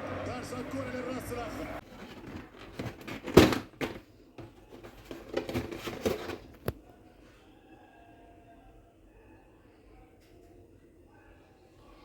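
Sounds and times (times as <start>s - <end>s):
objects knocking and clattering: 1.8s - 6.8s.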